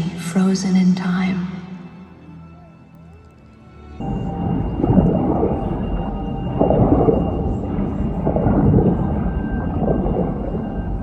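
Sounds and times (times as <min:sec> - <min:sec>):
deep rumbling sound effect: 0:04.0 - 0:11.0.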